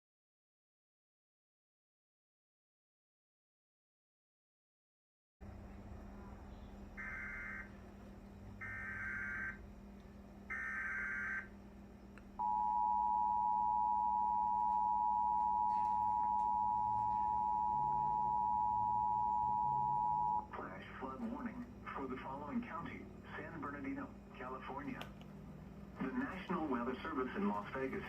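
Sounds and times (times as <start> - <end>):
two-tone attention signal: 12.4 - 20.5.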